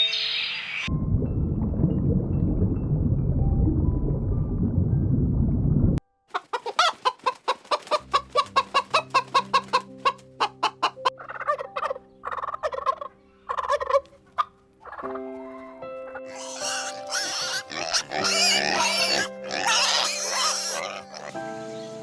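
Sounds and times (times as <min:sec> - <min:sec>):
low rumbling noise: 0:00.9 - 0:06.0
chicken clucking: 0:06.3 - 0:15.0.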